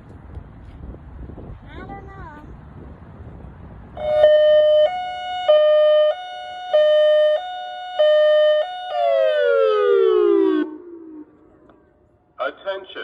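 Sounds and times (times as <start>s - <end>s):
electronic warning siren: 4.0s - 12.1s.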